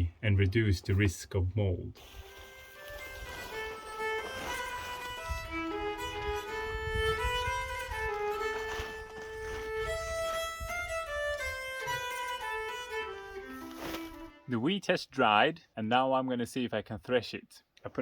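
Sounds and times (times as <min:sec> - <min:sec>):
fiddle melody: 0:02.0 - 0:14.7.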